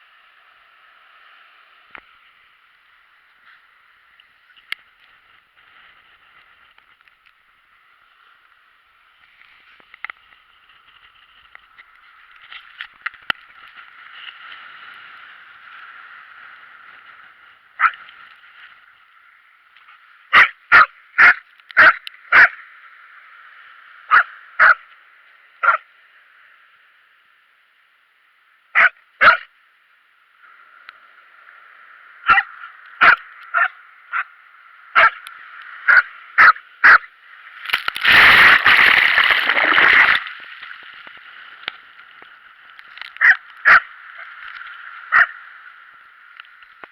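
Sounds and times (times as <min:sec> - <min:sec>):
dog barking sharply: 0:20.3 - 0:22.5, 0:24.1 - 0:24.8, 0:28.8 - 0:29.4, 0:32.3 - 0:34.2, 0:35.0 - 0:35.2, 0:43.2 - 0:43.8.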